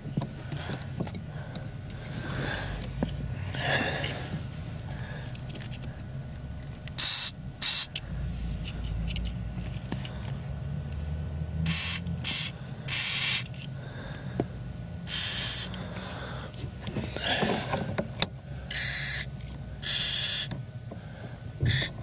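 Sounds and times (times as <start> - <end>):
aerosol can spraying: 7.0 - 7.9, 11.7 - 13.5, 15.1 - 15.7, 18.7 - 20.5, 21.7 - 21.9.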